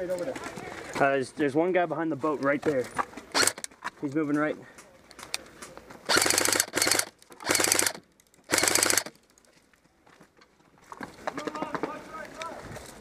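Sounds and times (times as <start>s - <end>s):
airsoft rifle full-auto bursts: 3.3s - 3.7s, 6.1s - 9.2s.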